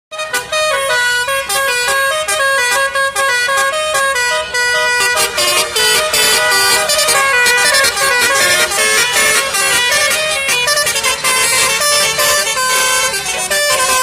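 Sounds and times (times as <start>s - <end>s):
musical bus horn playing tune: 0.1s - 14.0s.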